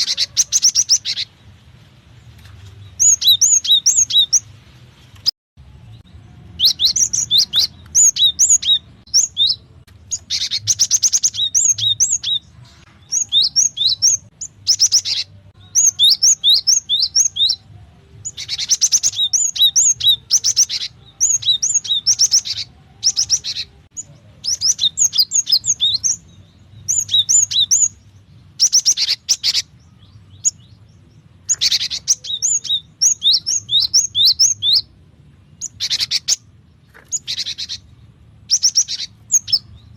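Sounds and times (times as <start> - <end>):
bird high chirps: 0.0 - 1.4, 2.7 - 4.5, 5.9 - 39.9.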